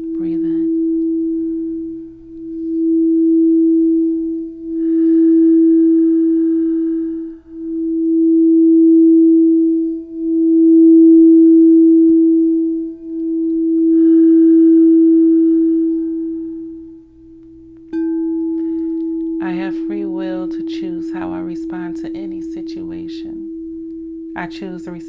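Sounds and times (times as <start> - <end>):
singing bowl ringing: 0.0 - 25.0.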